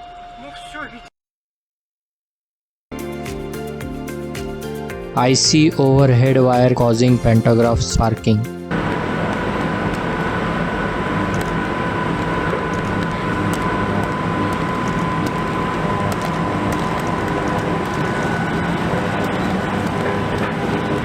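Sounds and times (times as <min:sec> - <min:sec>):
high whine: 0:02.9 - 0:21.0
electric arcing crackles: 0:08.7 - 0:21.0.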